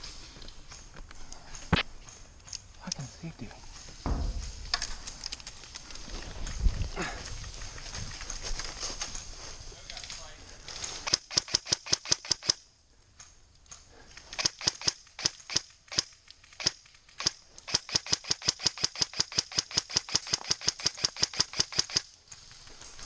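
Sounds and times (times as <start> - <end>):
airsoft gun firing: 11.1 - 12.6, 14.4 - 22.0.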